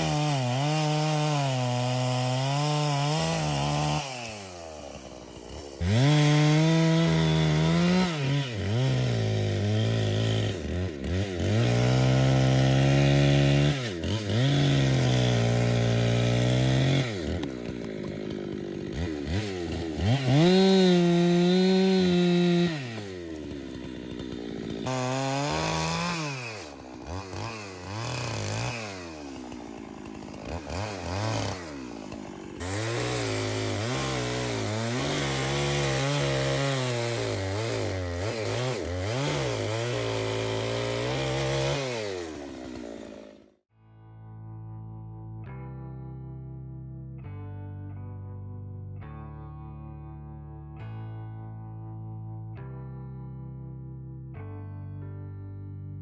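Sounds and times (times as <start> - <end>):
chainsaw cutting wood: 0.0 - 43.7.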